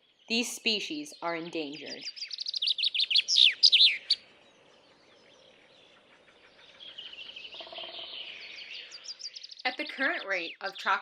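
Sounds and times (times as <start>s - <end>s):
high bird chirps: 0.4s - 4.2s, 6.5s - 11.0s.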